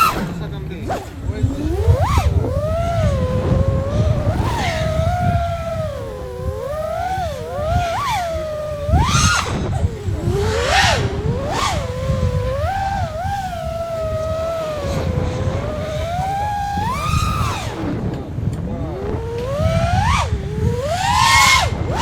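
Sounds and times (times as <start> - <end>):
drone electric motors whining: 0.0 - 22.0
wind noise rumble: 0.0 - 22.0.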